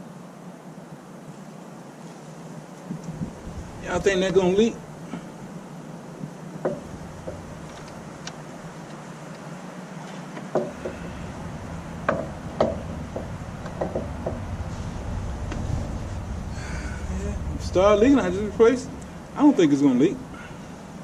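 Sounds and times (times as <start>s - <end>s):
low rumble: 3.0s - 6.2s, 6.8s - 8.9s, 10.7s - 21.0s.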